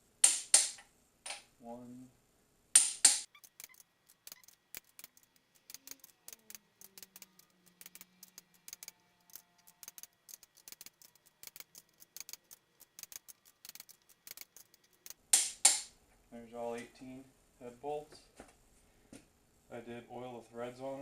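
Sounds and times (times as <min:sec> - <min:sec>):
torque wrench ratchet clicking: 0:03.2 - 0:15.2.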